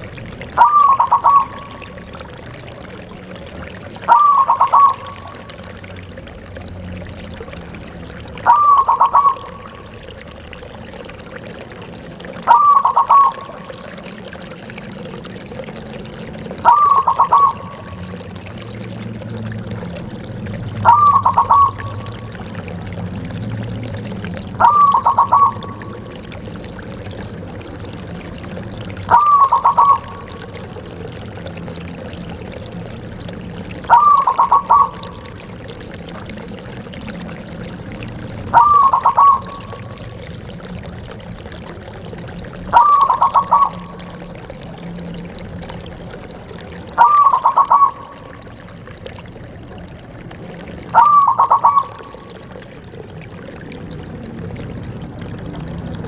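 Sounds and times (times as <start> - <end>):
dove cooing: 0.6 - 2.0, 4.0 - 5.4, 8.4 - 10.1, 12.5 - 13.6, 16.6 - 17.9, 20.8 - 22.2, 24.6 - 26.0, 29.1 - 30.5, 33.9 - 35.4, 38.5 - 39.8, 42.7 - 44.2, 46.9 - 48.3, 50.9 - 52.4.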